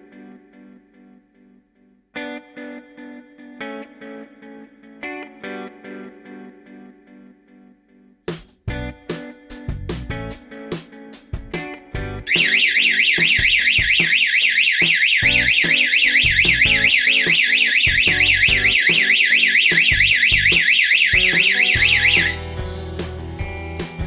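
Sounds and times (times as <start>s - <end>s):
warbling alarm siren: 12.3s - 22.4s
background music: 15.2s - 24.0s.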